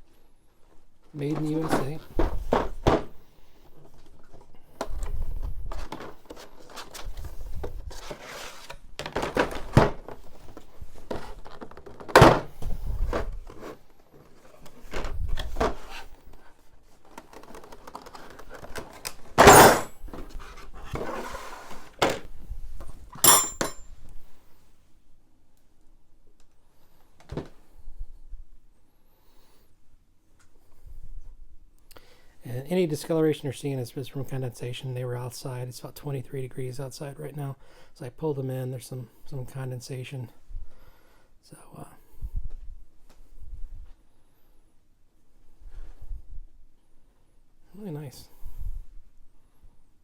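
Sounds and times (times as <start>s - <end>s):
wrenches knocking and clinking: 19.4s - 19.9s, 23.2s - 23.8s.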